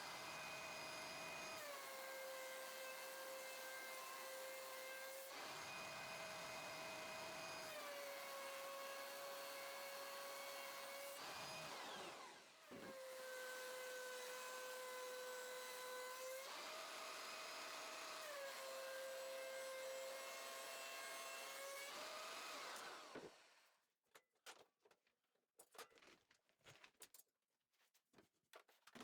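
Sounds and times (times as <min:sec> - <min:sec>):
thickness planer whining: 0:00.0 - 0:23.5.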